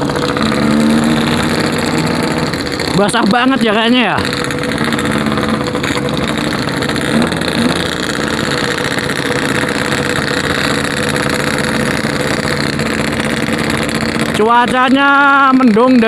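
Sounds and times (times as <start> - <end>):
motorcycle engine burbling: 0.0 - 16.0.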